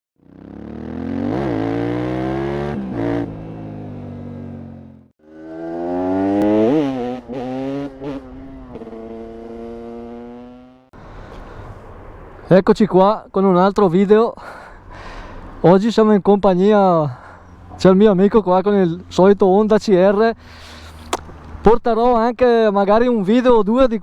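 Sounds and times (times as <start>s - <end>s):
two-stroke motorcycle engine revving: 0.2s - 10.9s.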